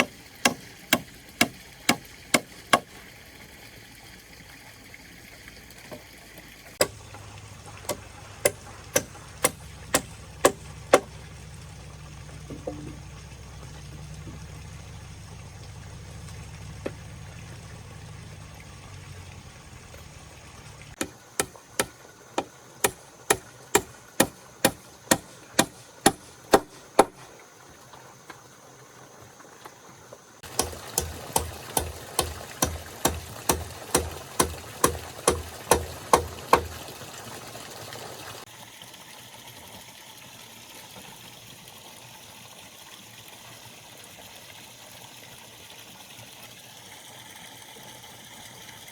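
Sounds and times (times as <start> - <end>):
low hum: 6.8 - 21.0.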